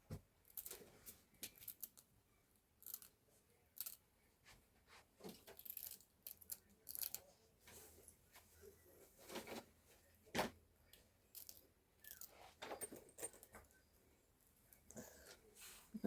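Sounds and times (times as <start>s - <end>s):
small objects clicking and rattling: 0.5s - 0.8s, 1.4s - 2.0s, 2.8s - 3.1s, 3.8s - 4.0s, 5.5s - 7.2s, 11.3s - 13.6s.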